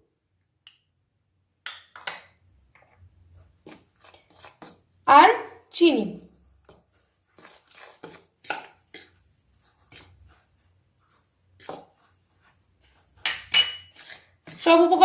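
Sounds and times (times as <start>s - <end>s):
spoon clinking against mixing bowl: 12.8s - 14.2s.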